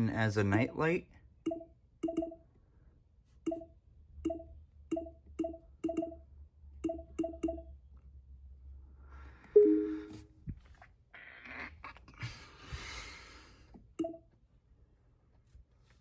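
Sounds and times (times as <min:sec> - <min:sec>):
clicky blips: 0:01.4 - 0:02.4, 0:03.5 - 0:06.2, 0:06.8 - 0:07.7, 0:14.0 - 0:14.2
longer two-note tone: 0:09.6 - 0:10.3.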